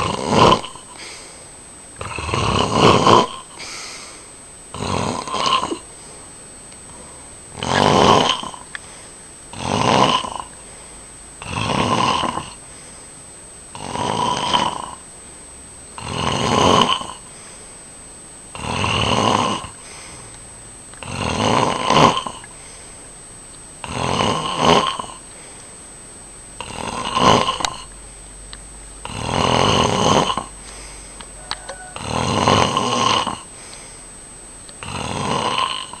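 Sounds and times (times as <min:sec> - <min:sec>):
person snoring: 0:00.0 - 0:01.4, 0:02.0 - 0:06.2, 0:06.9 - 0:10.8, 0:11.4 - 0:13.0, 0:13.7 - 0:15.0, 0:16.0 - 0:17.7, 0:18.5 - 0:20.4, 0:21.0 - 0:23.0, 0:23.8 - 0:25.6, 0:26.6 - 0:28.0, 0:29.0 - 0:34.1, 0:34.8 - 0:36.0.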